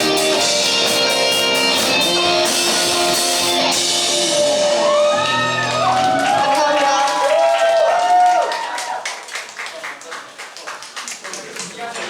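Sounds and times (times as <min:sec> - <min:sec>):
live rock band with guitars: 0:00.0 - 0:06.8.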